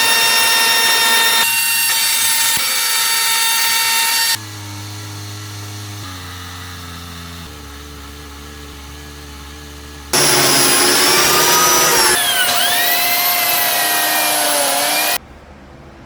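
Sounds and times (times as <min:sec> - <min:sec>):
power tool whining: 0:00.0 - 0:15.2
steady motor hum: 0:04.4 - 0:15.2.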